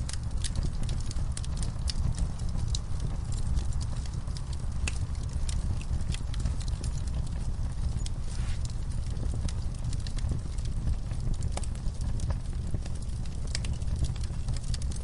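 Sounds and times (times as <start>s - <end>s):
low steady rumble: 0.0s - 15.0s
wood fire crackling: 0.0s - 15.0s.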